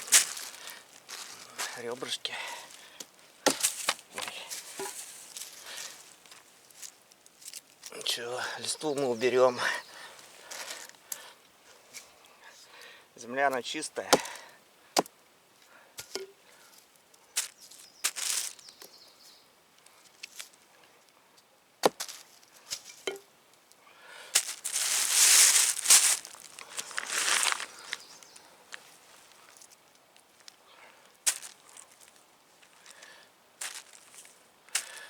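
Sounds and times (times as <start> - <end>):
dry leaves rustling: 0.0 - 8.0, 16.1 - 19.0, 21.8 - 23.1, 24.2 - 29.8, 31.2 - 35.0.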